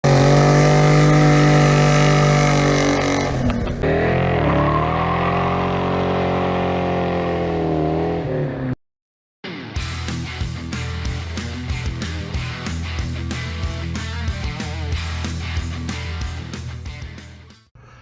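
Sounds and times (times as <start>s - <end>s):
vehicle engine running fast: 0.0s - 8.8s.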